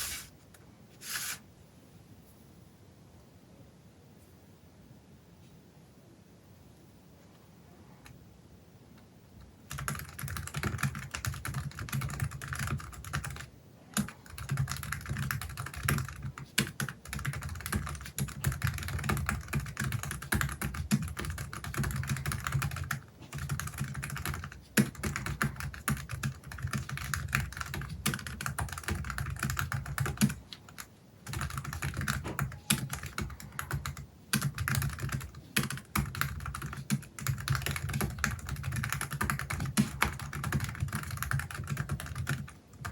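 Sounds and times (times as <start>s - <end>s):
fast typing on keyboard: 9.6s - 42.9s.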